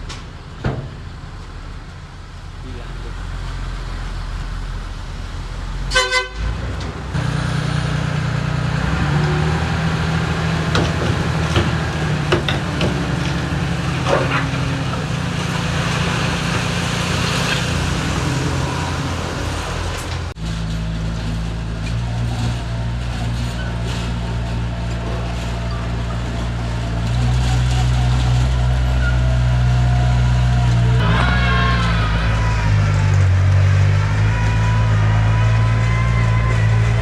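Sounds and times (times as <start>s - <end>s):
heavy machinery diesel engine running: 0.0s - 37.0s
short horn toot: 5.9s - 6.5s
metal clanks: 10.6s - 18.4s.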